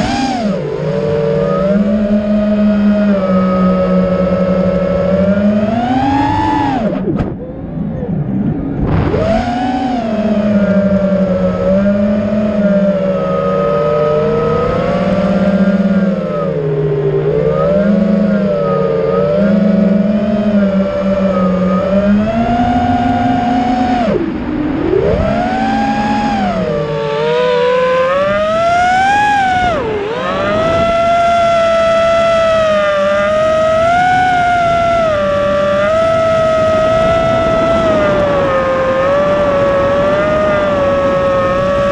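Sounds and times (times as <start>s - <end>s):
quadcopter motors whining: 0.0s - 41.9s.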